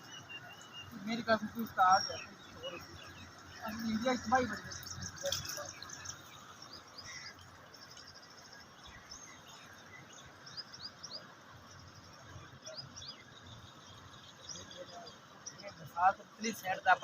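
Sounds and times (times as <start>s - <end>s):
background hiss: 0.0s - 17.0s
birds chirping: 0.0s - 17.0s.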